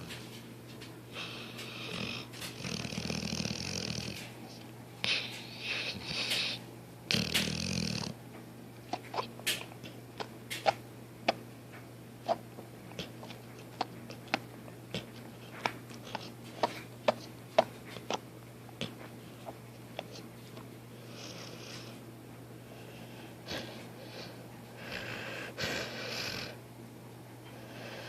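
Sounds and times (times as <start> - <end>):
dog snorting: 1.2 - 4.4, 5.0 - 8.2, 12.2 - 18.2, 22.8 - 26.6.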